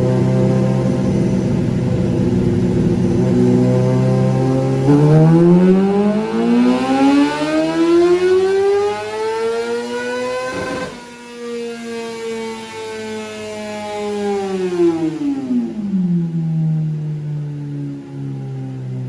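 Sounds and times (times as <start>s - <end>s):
race engine revving: 0.0s - 11.3s.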